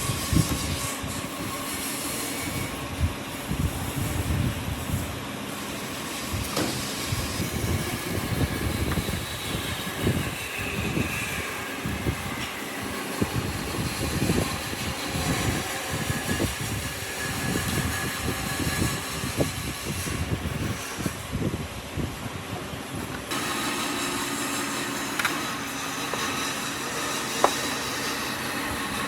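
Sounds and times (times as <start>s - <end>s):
tool knocking and scraping wood: 6.3s - 10.3s, 23.2s - 29.0s
wood lathe rumble: 23.3s - 29.0s.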